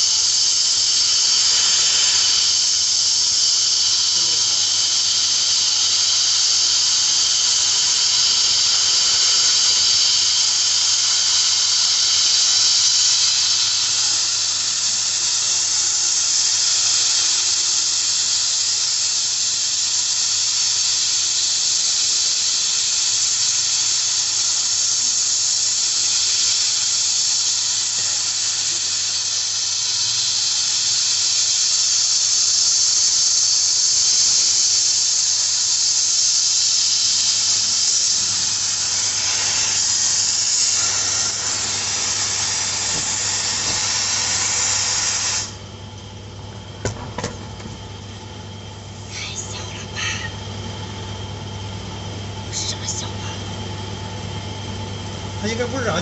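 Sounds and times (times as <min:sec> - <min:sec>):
cnc router running: 0:00.0 - 0:31.4, 0:37.0 - 0:46.0, 0:55.3 - 0:56.0.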